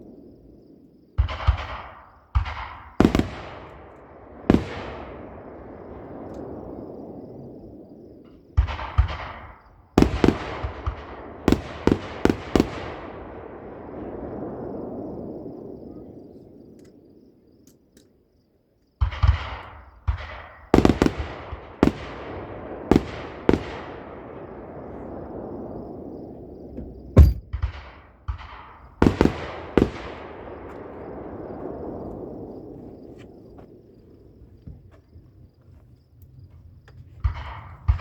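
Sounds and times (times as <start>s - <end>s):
fireworks booming with echo: 1.2s - 16.6s, 19.0s - 33.9s.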